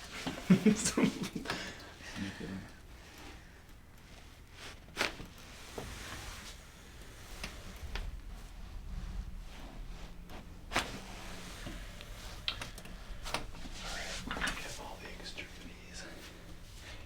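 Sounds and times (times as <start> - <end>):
rustling on treatment table: 3.0 - 17.0
faint joint clicks: 9.2 - 17.0.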